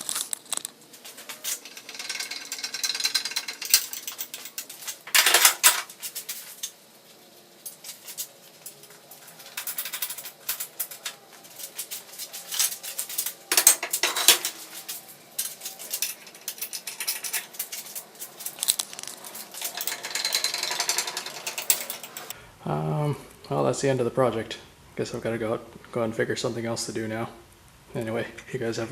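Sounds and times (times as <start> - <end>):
steel parts clinking and clanking: 0.0 - 6.8, 7.6 - 22.4.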